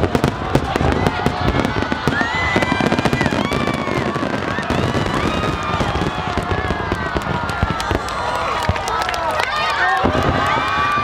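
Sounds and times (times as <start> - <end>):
fireworks bursting and crackling: 0.0 - 11.0.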